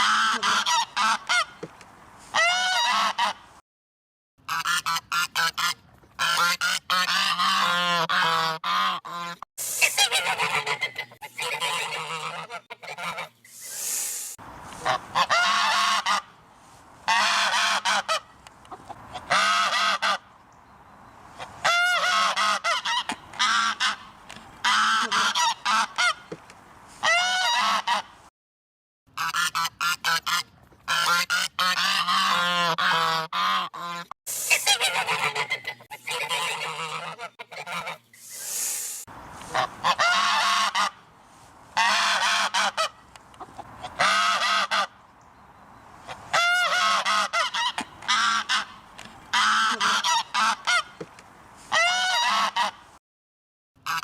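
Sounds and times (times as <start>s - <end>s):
geese honking: 0.0s - 1.6s, 2.3s - 3.4s, 4.5s - 13.4s, 14.7s - 16.4s, 17.0s - 20.3s, 21.4s - 26.3s, 27.0s - 28.1s, 29.2s - 38.5s, 39.4s - 41.1s, 41.7s - 45.0s, 46.1s - 51.0s, 51.7s - 52.8s.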